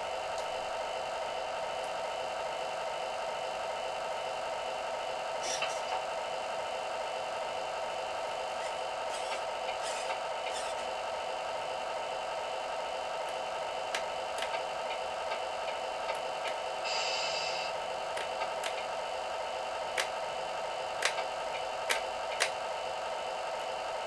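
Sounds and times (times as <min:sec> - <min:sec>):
truck engine idle through speaker: 0:00.0 - 0:24.0
short hiss: 0:16.9 - 0:17.7
sharp clicks: 0:21.0 - 0:22.6.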